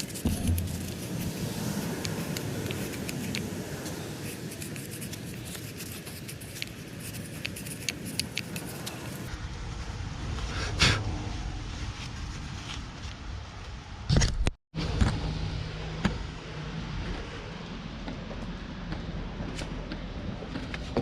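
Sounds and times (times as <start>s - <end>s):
light clicks and scrapes: 0.0s - 9.3s.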